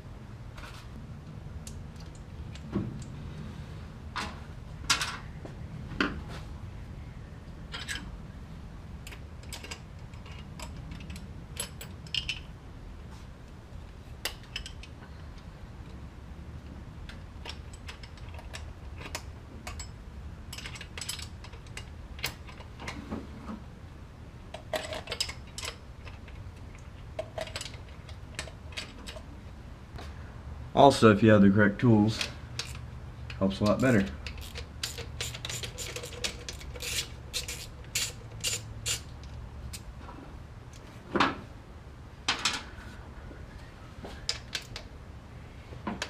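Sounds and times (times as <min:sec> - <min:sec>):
steady low hum: 0:00.0 - 0:46.0
metallic clicks of hand tools: 0:32.2 - 0:39.9.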